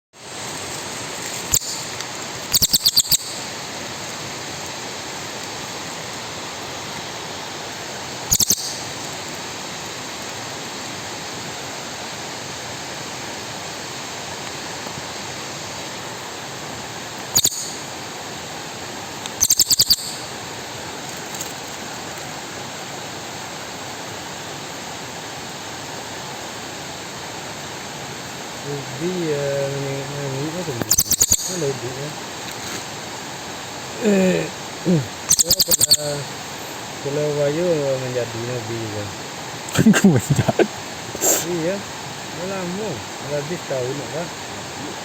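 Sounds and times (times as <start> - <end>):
bird chirping: 1.3 - 3.5, 8.2 - 9.1, 17.3 - 17.9, 19.4 - 20.3, 29.0 - 32.1, 34.8 - 36.5
steady rushing noise: 36.0 - 45.0.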